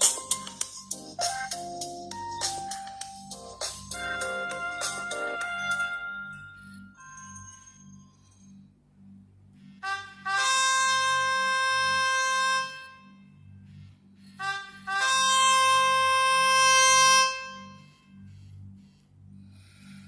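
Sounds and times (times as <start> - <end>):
phone ringtone: 0.0 - 8.2.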